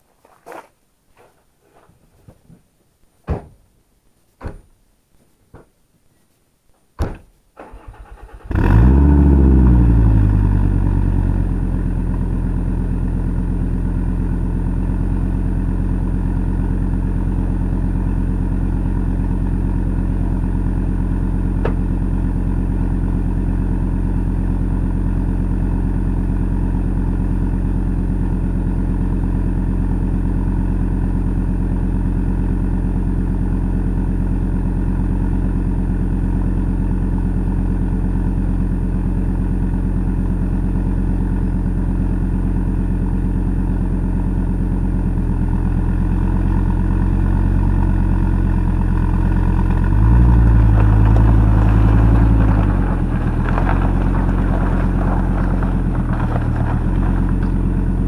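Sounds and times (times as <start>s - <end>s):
car engine cranking and idling: 7.5s - 58.0s.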